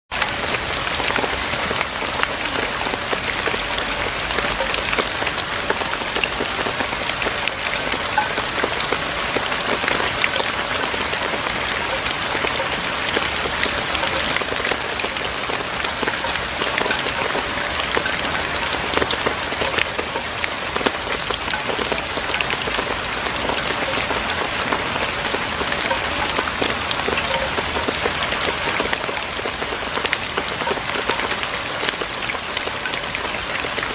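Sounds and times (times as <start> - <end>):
rain on roof tiles: 0.1 - 33.9.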